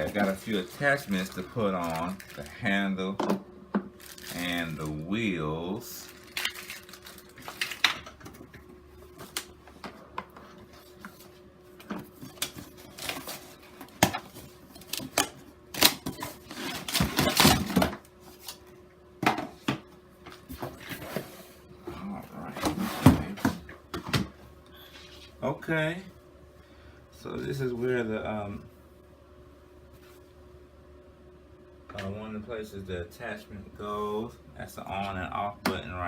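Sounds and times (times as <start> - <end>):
vacuum parts clicking and rattling: 0.0 - 2.7, 5.8 - 8.5, 11.9 - 18.0.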